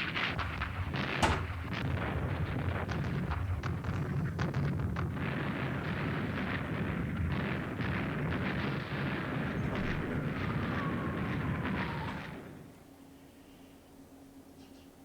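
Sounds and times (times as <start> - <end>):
rapid gunfire cracks: 0.0 - 12.7
artillery explosions: 0.0 - 12.8
faint falling whistle: 9.6 - 12.5.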